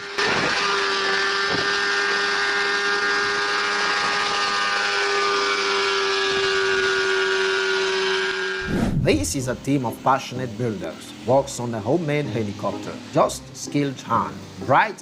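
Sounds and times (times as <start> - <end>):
small engine buzzing: 0.0 - 8.7.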